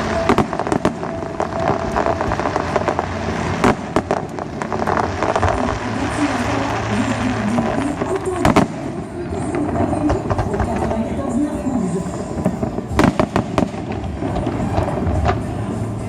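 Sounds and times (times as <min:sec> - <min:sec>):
fireworks bursting and crackling: 0:00.0 - 0:16.0
loud fireworks bangs: 0:00.0 - 0:16.0.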